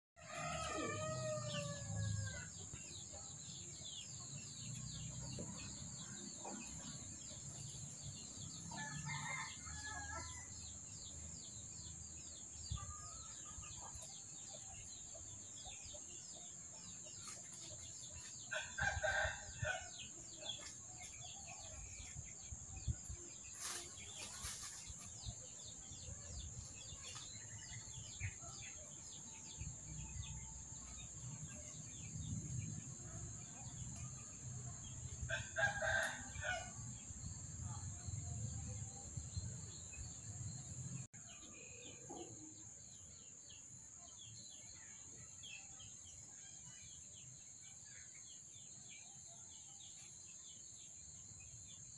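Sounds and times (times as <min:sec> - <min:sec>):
rooster crowing: 0:00.2 - 0:02.5, 0:08.7 - 0:10.5.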